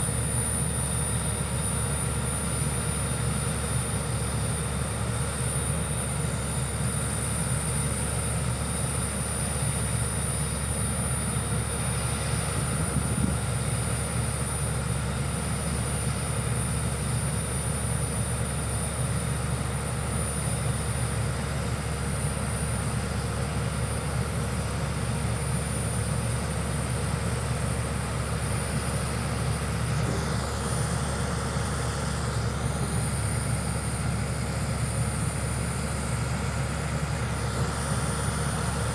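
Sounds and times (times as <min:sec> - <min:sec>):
heavy diesel engine droning: 0:27.6 - 0:38.9.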